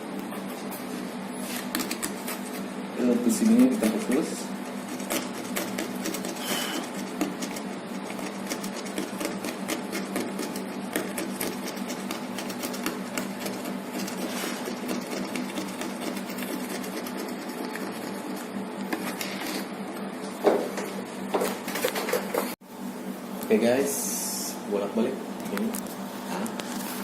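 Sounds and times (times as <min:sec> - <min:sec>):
rotary tool cutting circuit board: 0:03.4 - 0:19.7.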